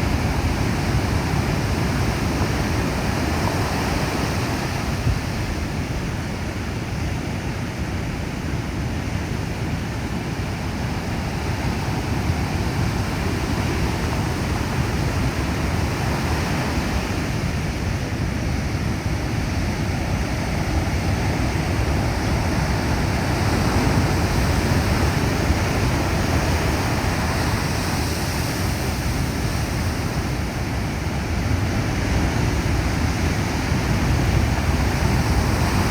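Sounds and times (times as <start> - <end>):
ocean waves breaking: 9.9 - 35.9.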